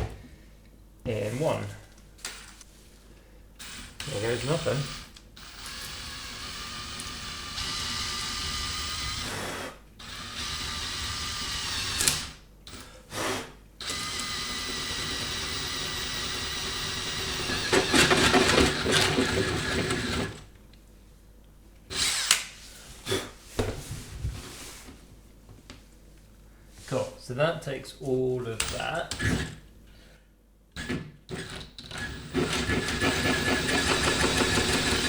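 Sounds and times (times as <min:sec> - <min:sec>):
drill boring into flooring: 0:03.6 - 0:20.4, 0:21.9 - 0:22.5, 0:28.6 - 0:29.6, 0:30.8 - 0:35.0.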